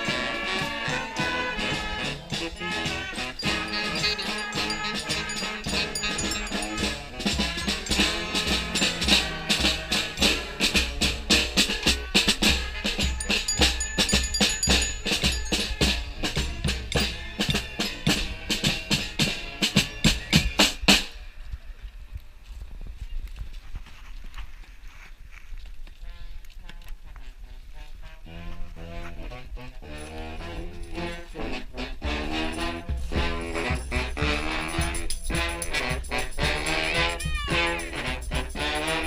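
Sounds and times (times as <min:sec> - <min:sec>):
steady drum beat: 0:00.0 - 0:21.1, 0:30.5 - 0:39.0
brass band horns: 0:00.0 - 0:21.4, 0:27.1 - 0:39.0.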